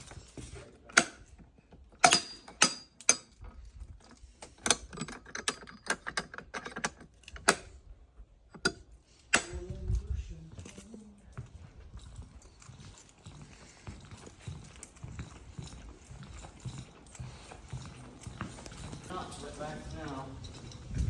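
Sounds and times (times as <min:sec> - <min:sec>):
sharp clicks and knocks: 0:00.0 - 0:07.8, 0:08.5 - 0:10.9.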